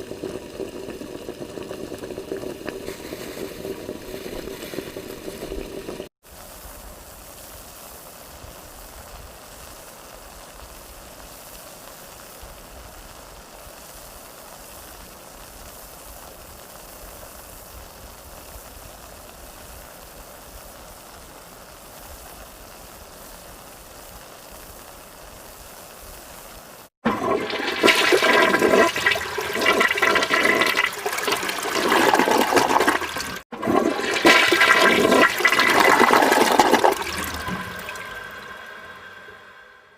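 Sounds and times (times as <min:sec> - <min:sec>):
faint steady hiss: 0:00.0 - 0:26.9
rushing water: 0:27.0 - 0:39.6.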